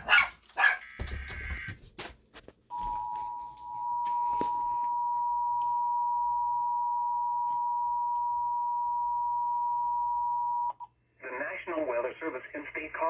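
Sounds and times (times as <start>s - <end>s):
two-tone alert signal: 2.7s - 10.9s.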